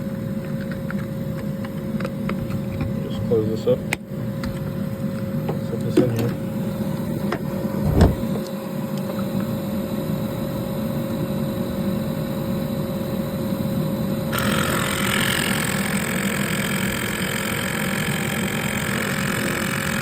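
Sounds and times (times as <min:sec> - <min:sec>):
thump: 0:07.8 - 0:08.3.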